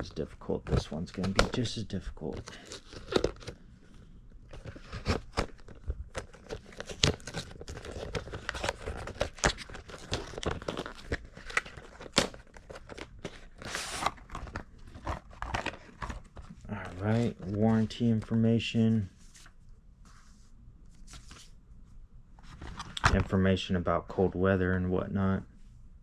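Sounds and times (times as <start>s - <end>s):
packaging cut and pried open: 2.4s - 3.5s.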